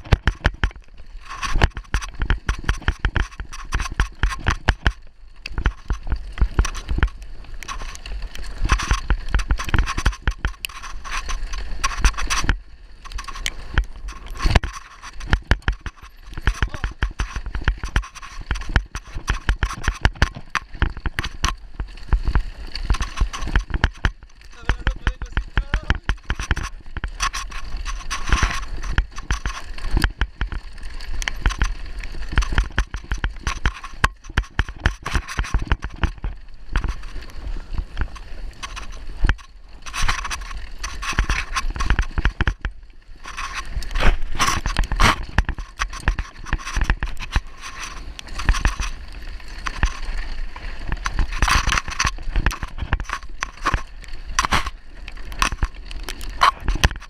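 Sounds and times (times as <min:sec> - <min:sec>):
bike tyres crunching over stones: 0:00.0 - 0:57.0.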